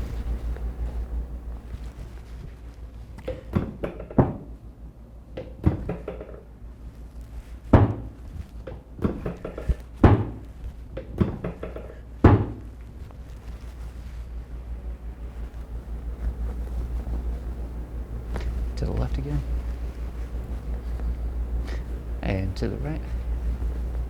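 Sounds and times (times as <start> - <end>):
low steady hum: 0.0 - 24.0
thuds and knocks: 3.2 - 4.5, 5.4 - 6.5, 7.7 - 12.7.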